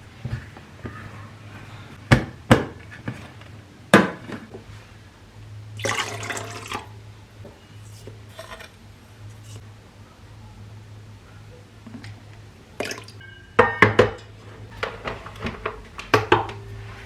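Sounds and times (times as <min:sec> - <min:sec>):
hard objects knocking: 0:13.6 - 0:16.7
low hum: 0:14.4 - 0:17.0.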